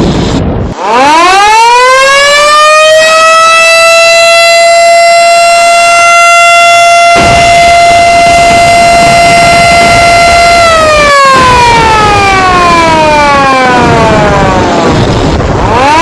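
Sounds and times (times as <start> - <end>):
siren winding up and down: 0.8 - 16.0
low noise: 7.0 - 16.0.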